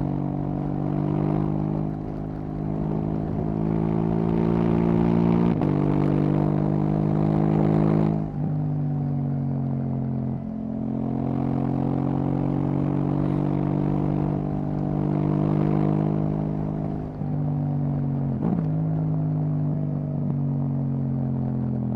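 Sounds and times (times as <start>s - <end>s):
motorcycle engine accelerating: 0.0s - 8.7s, 10.7s - 21.8s.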